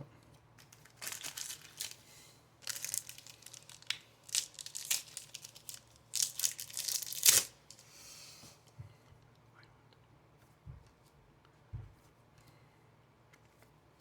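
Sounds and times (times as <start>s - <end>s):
foil wrapper crinkling and tearing: 0.6s - 2.0s, 2.6s - 7.8s.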